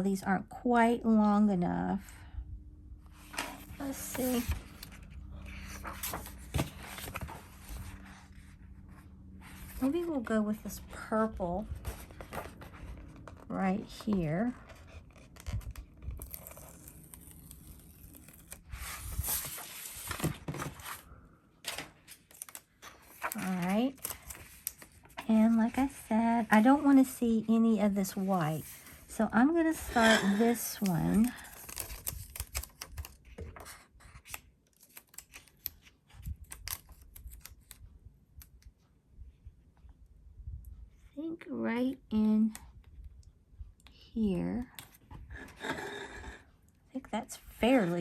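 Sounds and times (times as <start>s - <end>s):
paper rustling: 3.2s - 10.8s, 11.6s - 27.2s, 29.7s - 37.8s
paper crinkling and clicking: 21.7s - 25.8s, 30.5s - 37.8s.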